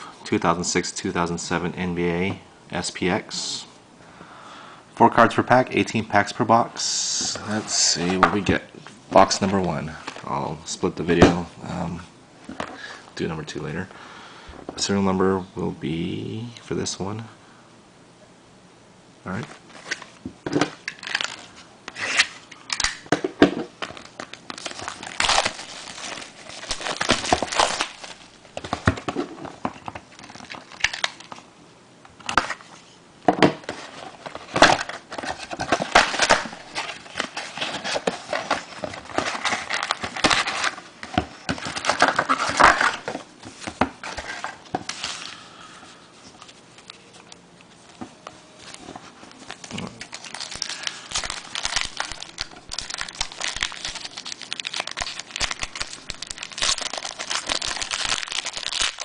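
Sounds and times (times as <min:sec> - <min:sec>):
plastic wrapping crinkling: 0:20.8 - 0:23.0, 0:23.8 - 0:31.4, 0:33.7 - 0:45.5, 0:46.3 - 0:59.0.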